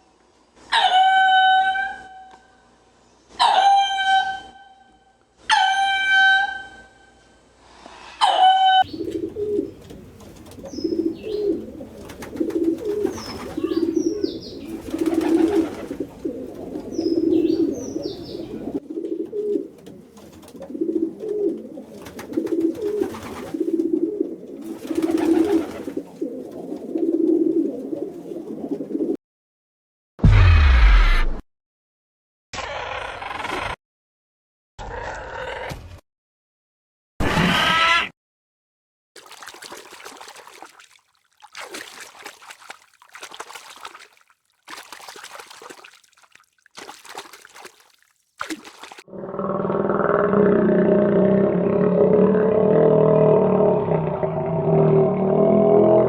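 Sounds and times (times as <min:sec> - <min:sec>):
animal calling: 0:08.2 - 0:18.8
pigeons cooing: 0:08.8 - 0:29.2
high bird chirps: 0:13.1 - 0:14.8.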